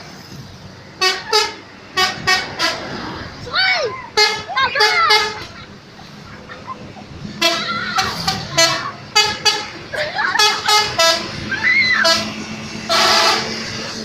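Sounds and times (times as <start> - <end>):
bus engine humming: 0.0 - 14.0
musical air horn toots: 1.0 - 2.9, 7.4 - 9.8, 10.4 - 14.0
voices shouting: 2.4 - 13.6.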